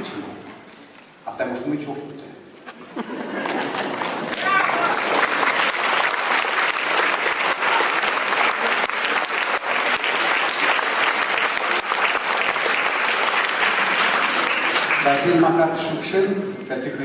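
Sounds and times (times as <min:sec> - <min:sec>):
audience applauding: 0:03.0 - 0:15.8.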